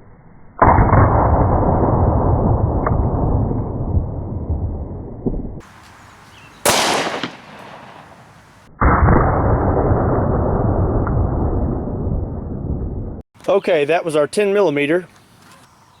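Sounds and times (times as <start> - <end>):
pistol shot: 6.6 - 8.5.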